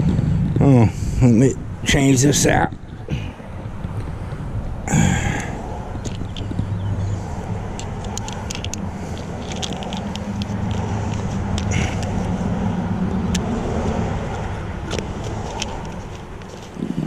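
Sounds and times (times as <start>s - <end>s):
vehicle engine humming: 0.0s - 17.0s
small clicks and taps: 7.8s - 12.1s.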